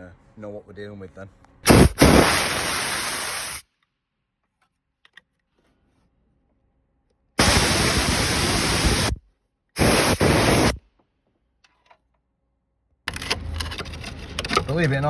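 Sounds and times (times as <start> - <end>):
cleaning spray hissing: 1.7 - 3.6, 7.4 - 9.2, 9.8 - 10.8.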